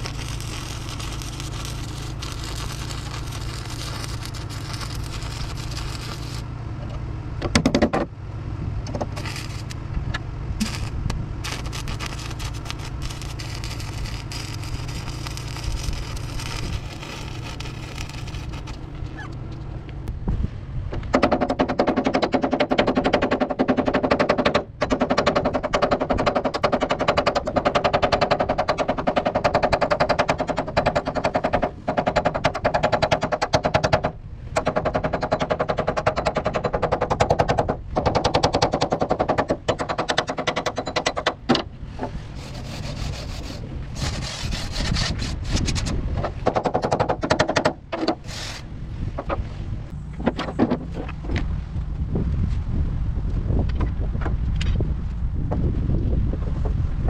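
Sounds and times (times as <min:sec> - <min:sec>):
welding arc crackling: 0:00.0 - 0:06.5, 0:09.1 - 0:09.8, 0:10.6 - 0:19.3
steady low hum: 0:00.0 - 0:21.3.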